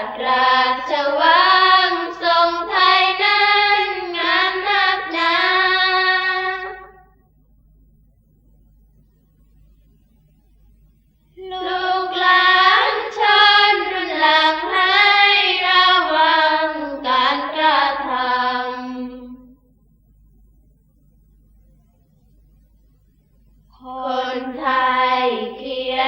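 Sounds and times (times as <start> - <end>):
voices chanting in unison: 0.0 - 7.0, 11.4 - 19.4, 23.8 - 26.0.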